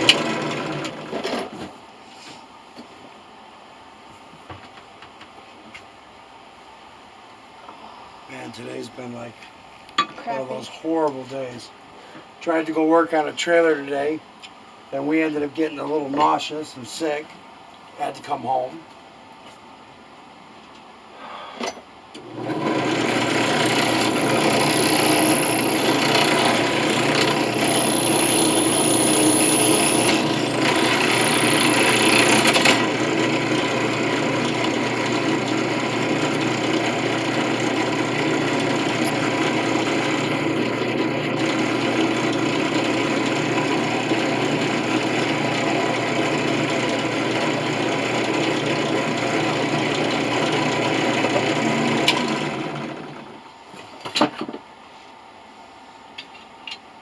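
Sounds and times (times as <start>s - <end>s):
power tool scraping metal: 22.2s - 52.8s.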